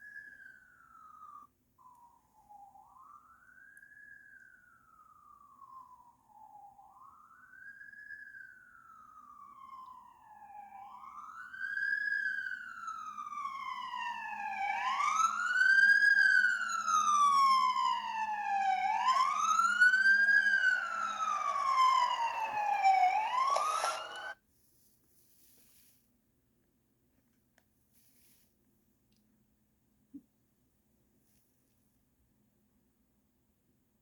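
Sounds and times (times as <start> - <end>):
siren wailing: 0.0 - 24.4.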